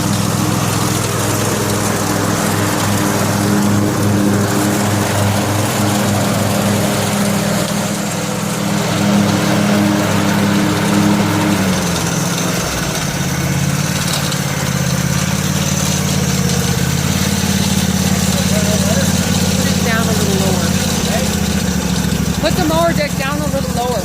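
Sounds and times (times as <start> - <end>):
lawn tractor engine running: 0.0 - 24.0.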